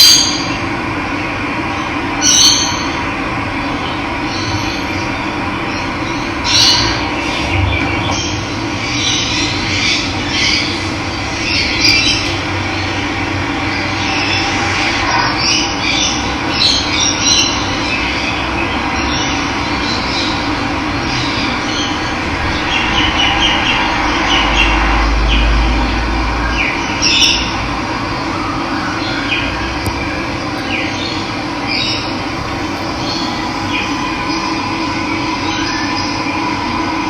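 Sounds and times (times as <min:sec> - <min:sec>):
birds chirping: 0:03.8 - 0:27.6, 0:28.8 - 0:36.3
low rumble: 0:06.8 - 0:15.8, 0:20.3 - 0:28.2, 0:29.8 - 0:36.0.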